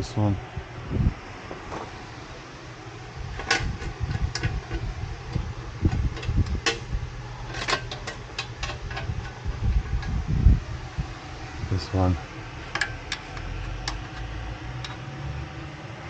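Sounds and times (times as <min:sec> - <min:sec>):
steady low hum: 0:00.0 - 0:16.0
light clicks of metal bolts: 0:12.7 - 0:15.0.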